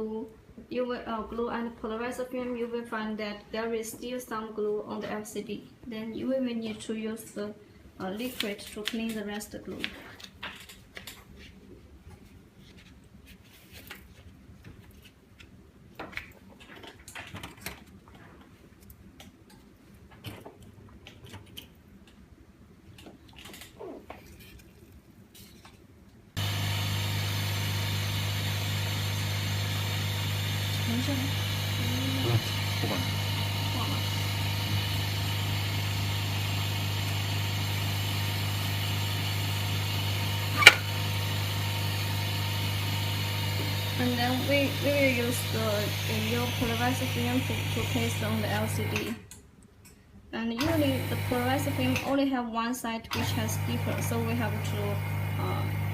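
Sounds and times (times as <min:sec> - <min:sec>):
vacuum pump motor hum: 0:26.4 - 0:49.2, 0:50.6 - 0:52.2, 0:53.1 - 0:55.9.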